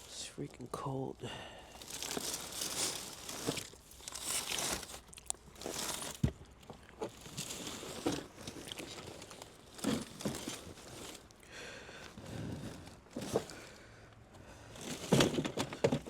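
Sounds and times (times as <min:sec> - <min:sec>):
plastic packaging crinkling: 0:01.8 - 0:11.4.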